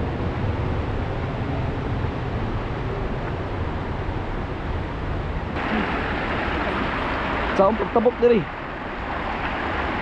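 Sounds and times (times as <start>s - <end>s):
river rushing: 2.2s - 10.0s.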